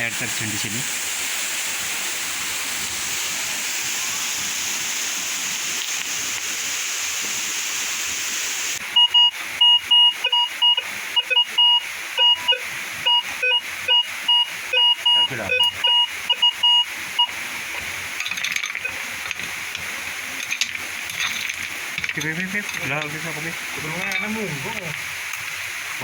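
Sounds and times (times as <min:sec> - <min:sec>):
waterfall rushing: 0:00.0 - 0:26.0
metal detector beeps: 0:09.0 - 0:17.3.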